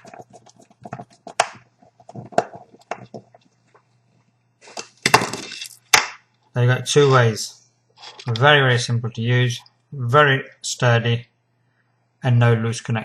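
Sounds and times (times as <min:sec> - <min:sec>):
parts clattering: 0:04.6 - 0:06.1, 0:08.0 - 0:08.5.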